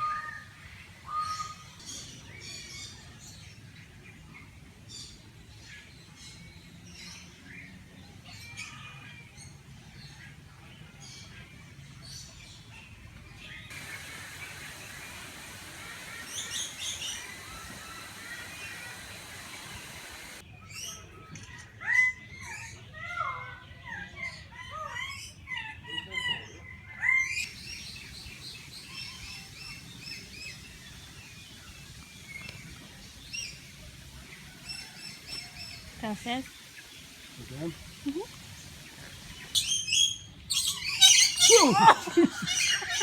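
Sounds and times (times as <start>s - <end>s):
birds chirping: 13.7s - 20.4s, 27.4s - 43.0s.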